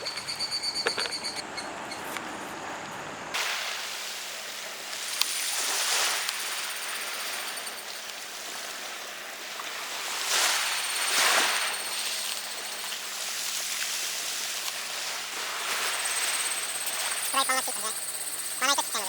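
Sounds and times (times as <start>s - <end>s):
waves washing on a beach: 3.3s - 17.9s.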